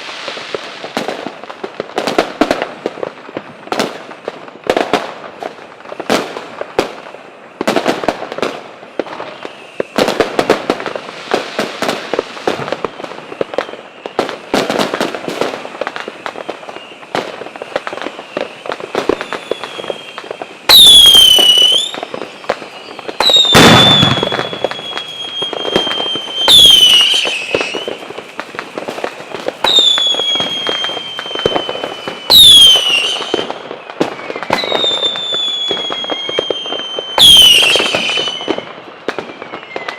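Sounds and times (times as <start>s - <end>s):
firework crackling pops: 0.0s - 39.9s
whistling fireworks: 0.0s - 39.9s
deep firework bang: 23.5s - 24.8s.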